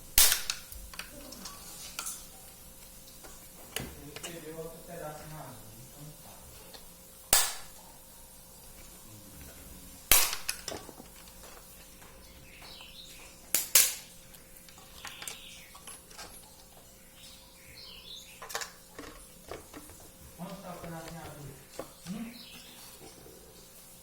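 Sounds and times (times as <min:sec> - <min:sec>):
dishes and utensils clinking: 0:01.0 - 0:02.6, 0:10.4 - 0:13.4, 0:14.3 - 0:16.9, 0:18.4 - 0:23.2.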